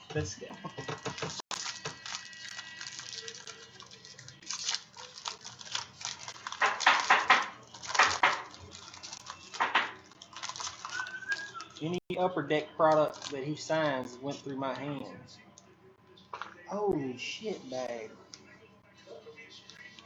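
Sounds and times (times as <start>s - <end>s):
cards and packs rustling: 0.8s - 12.0s, 12.8s - 13.4s.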